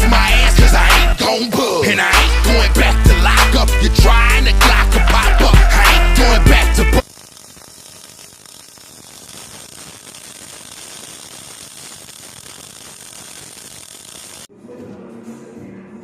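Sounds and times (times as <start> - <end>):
loud music: 0.0 - 7.0.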